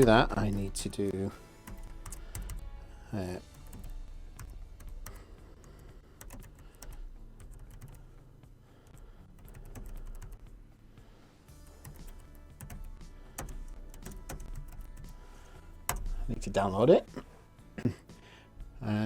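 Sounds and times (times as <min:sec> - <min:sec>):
computer keyboard typing: 0:00.0 - 0:01.0, 0:01.6 - 0:02.8, 0:03.5 - 0:08.2, 0:08.8 - 0:10.4, 0:11.7 - 0:16.4.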